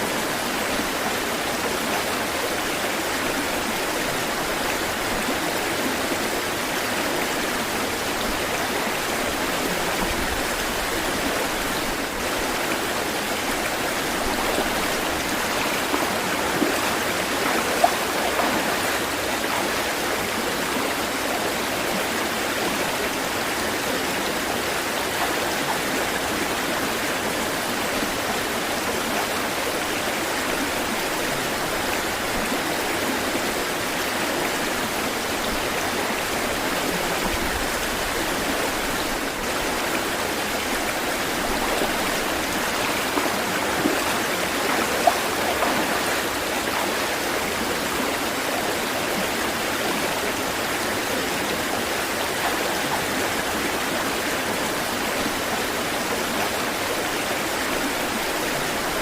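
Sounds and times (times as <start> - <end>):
flowing water rushing: 0.0 - 59.0.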